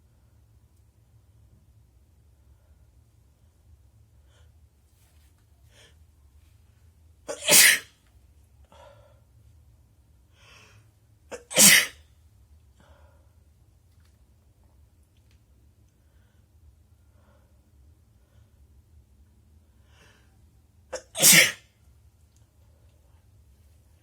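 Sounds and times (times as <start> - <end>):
person sneezing: 7.3 - 7.9, 11.3 - 12.0, 20.9 - 21.6.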